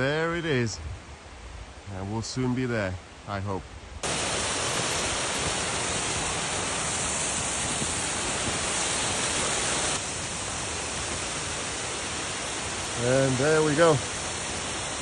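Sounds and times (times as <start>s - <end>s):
waterfall rushing: 4.0s - 15.0s.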